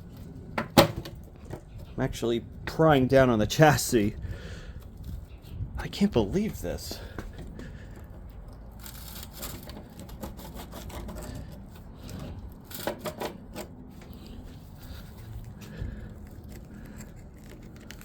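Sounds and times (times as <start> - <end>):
metal pick scraping and clicking: 7.2 - 14.3.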